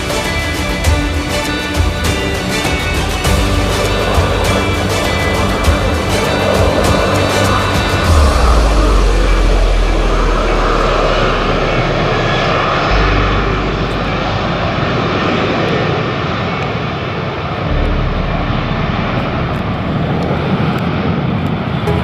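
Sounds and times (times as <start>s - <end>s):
airliner engines rushing: 0.0s - 22.0s.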